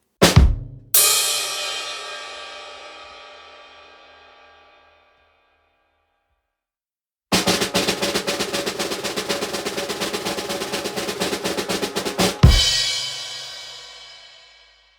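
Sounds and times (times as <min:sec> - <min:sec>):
cymbal crash ringing: 0:01.0 - 0:05.2
fast drum roll: 0:07.3 - 0:14.2.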